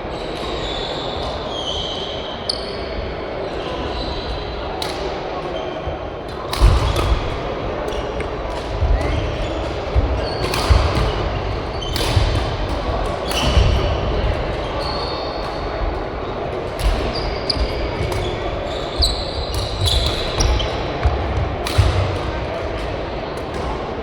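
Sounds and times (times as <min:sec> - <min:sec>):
shoes squeaking on court floor: 0:00.1 - 0:04.5, 0:07.9 - 0:22.0
racket hitting shuttlecock: 0:08.5 - 0:13.8, 0:19.5 - 0:23.8.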